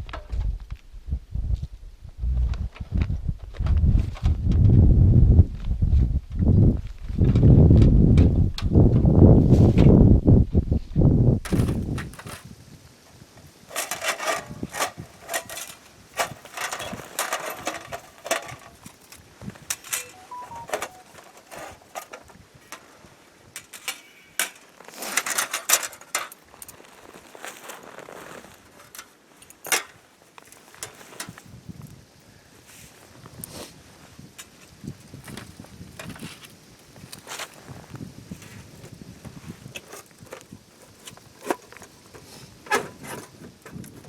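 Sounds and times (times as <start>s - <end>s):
gear clinking and rustling: 11.5s - 12.6s, 13.5s - 31.5s.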